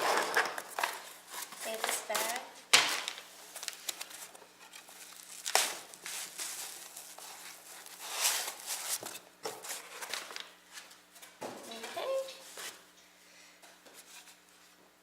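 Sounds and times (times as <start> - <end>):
plastic packaging crinkling: 3.0 - 9.0.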